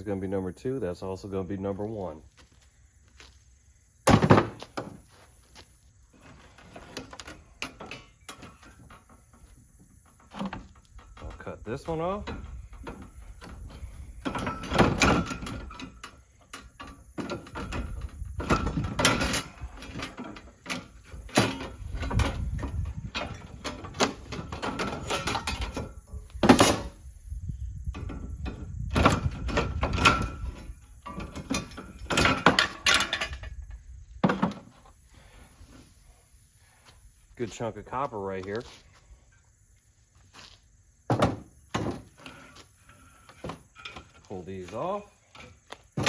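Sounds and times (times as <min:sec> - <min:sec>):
sheet metal clanking and knocking: 0:12.2 - 0:16.0.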